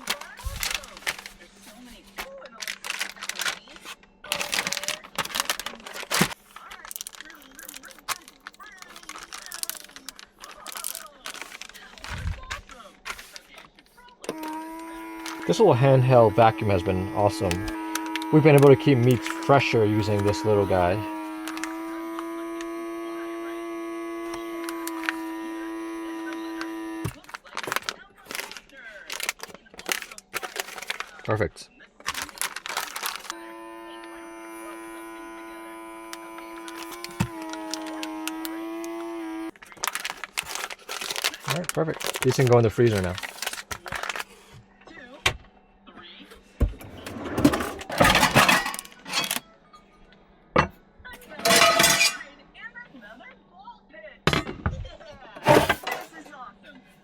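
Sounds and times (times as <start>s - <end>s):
rustling and clattering packs: 0.0s - 22.8s, 24.4s - 33.4s, 39.6s - 44.6s, 46.9s - 49.4s, 55.4s - 56.2s
electric vacuum pump humming: 0.0s - 31.2s, 32.1s - 44.7s, 46.5s - 49.4s, 55.3s - 56.2s.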